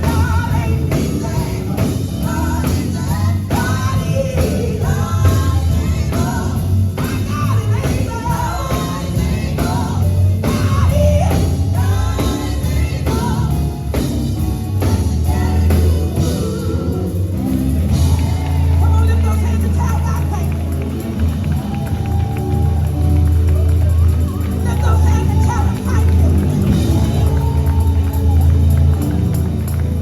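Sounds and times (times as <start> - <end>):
women singing gospel: 0.0 - 20.5
heavy bass line: 0.0 - 30.0
steady drum beat: 0.0 - 30.0.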